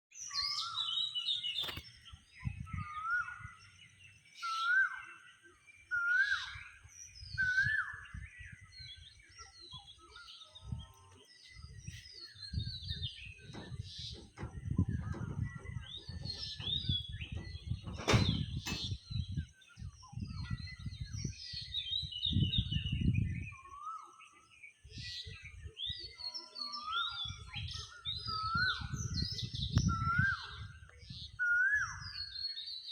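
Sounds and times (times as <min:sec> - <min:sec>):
songbirds chirping: 0:00.1 - 0:32.9
low rumbling bursts: 0:12.5 - 0:19.5.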